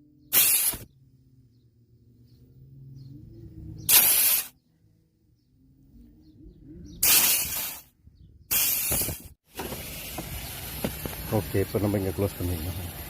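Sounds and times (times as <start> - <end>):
compressed gas hissing: 0.3 - 0.9, 3.9 - 4.5, 7.0 - 7.9, 8.5 - 11.4.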